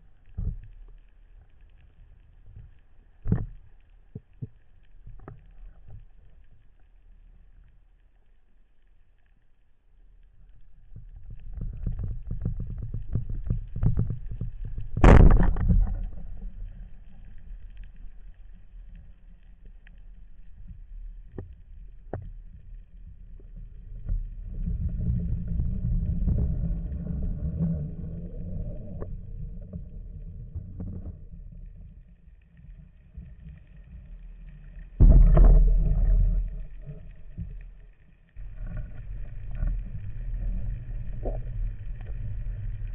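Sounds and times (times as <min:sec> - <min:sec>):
underwater rumbling and gurgling: 0:00.0 - 0:42.9.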